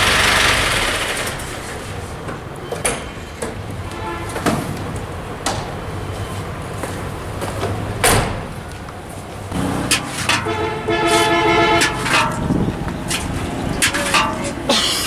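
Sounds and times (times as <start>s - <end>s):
road traffic engine rumble: 0.0s - 15.0s.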